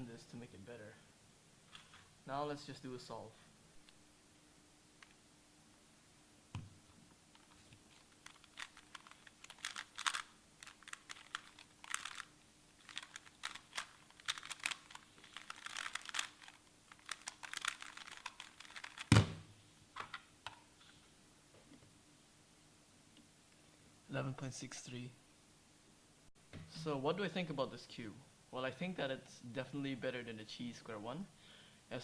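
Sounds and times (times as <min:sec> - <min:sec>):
plastic puzzle clicking: 0:08.2 - 0:19.1
loud thump: 0:19.1 - 0:19.5.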